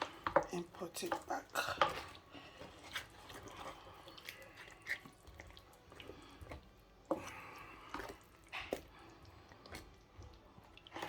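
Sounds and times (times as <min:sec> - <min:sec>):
stew bubbling in a pot: 0:00.0 - 0:11.0.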